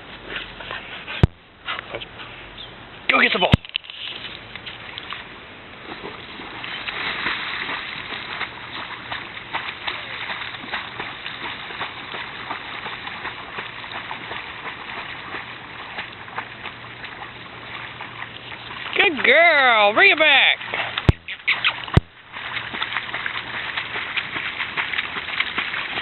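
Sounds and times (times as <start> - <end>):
dog splashing through water: 4.7 - 26.0.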